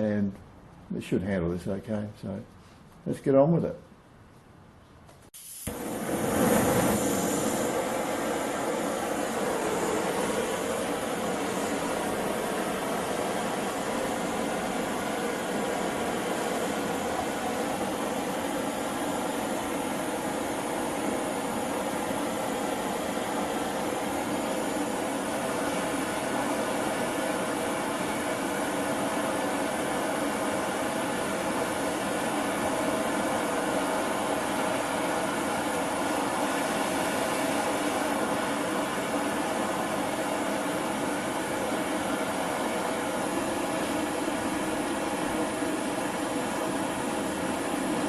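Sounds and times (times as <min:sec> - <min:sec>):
gas torch hissing: 0:05.3 - 0:48.0.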